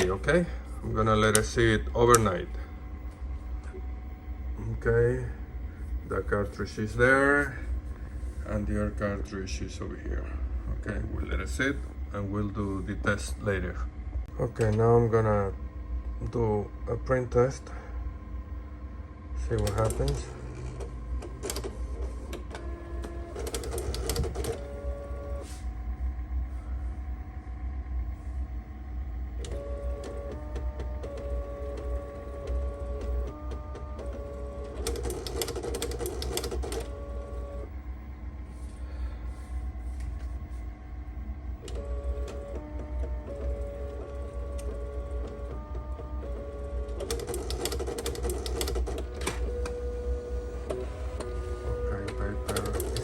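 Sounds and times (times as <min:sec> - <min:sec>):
printer motor whirring: 0:00.0 - 0:53.0
printer buzzing passes: 0:19.5 - 0:25.6, 0:28.9 - 0:37.8, 0:41.5 - 0:53.0.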